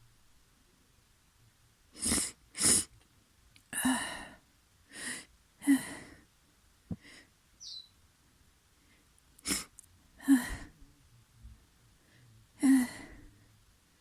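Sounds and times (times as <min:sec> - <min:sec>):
person sneezing: 0:02.0 - 0:02.9, 0:09.4 - 0:10.7.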